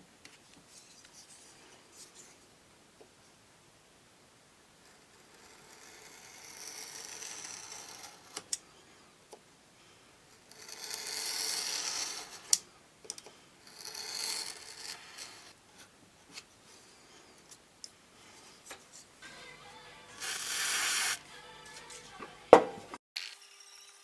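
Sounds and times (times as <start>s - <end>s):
scratchy rubbing on small part: 20.2s - 21.2s.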